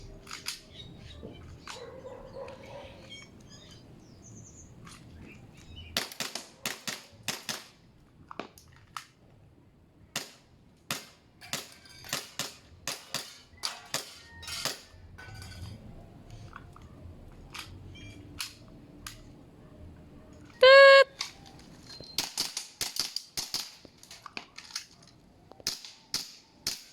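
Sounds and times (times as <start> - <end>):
loud electronic beep: 20.6 - 21.1.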